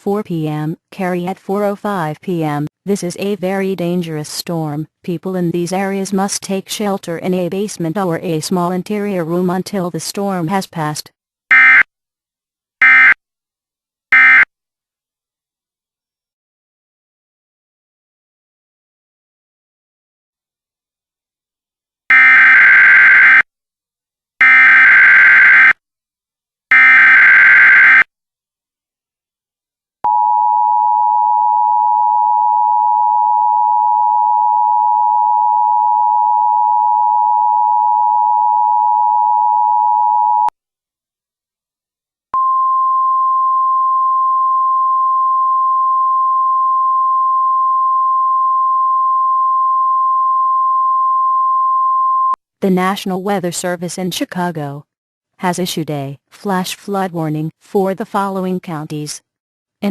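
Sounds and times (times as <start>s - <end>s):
steady single tone: 30.0s - 40.5s, 42.4s - 52.4s.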